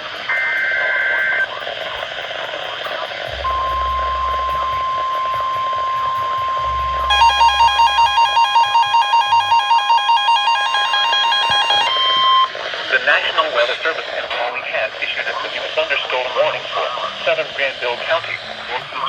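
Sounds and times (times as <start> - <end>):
faint radio hiss: 0.0 - 19.0
buzzy two-pitch electronic alarm: 3.3 - 12.6
steady high beep alarm tone: 3.3 - 12.6.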